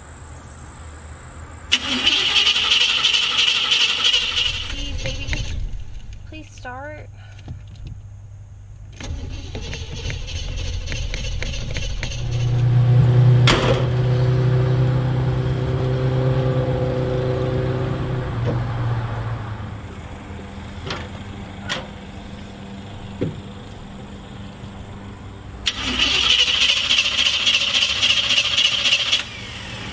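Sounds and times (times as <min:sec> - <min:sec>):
car starter cranking: 0:01.7 - 0:06.3, 0:08.8 - 0:12.8, 0:25.6 - 0:29.9
car engine running: 0:03.6 - 0:29.9.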